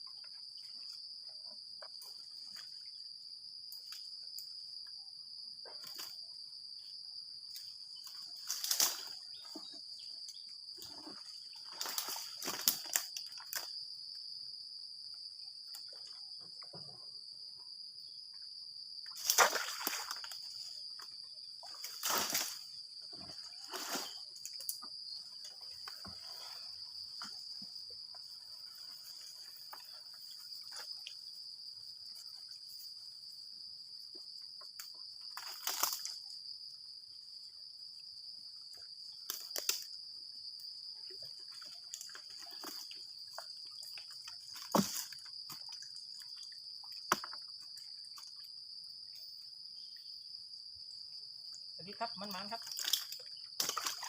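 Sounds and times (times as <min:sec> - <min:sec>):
insects droning: 0:00.0 - 0:54.0
water splashes: 0:19.2 - 0:20.4.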